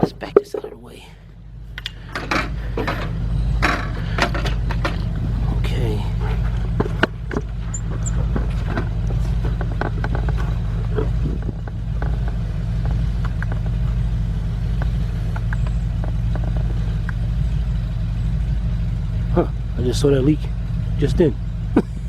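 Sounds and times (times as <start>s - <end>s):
low mechanical hum: 0.0s - 22.0s
light clicks and knocks: 1.8s - 14.0s.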